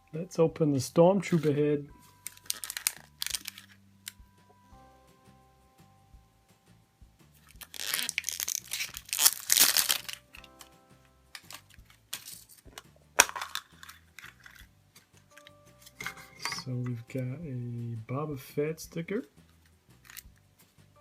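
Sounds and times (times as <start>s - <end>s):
soft background music: 0.0s - 21.0s
plastic packaging crinkling: 1.3s - 4.2s, 7.4s - 10.7s, 11.3s - 16.7s.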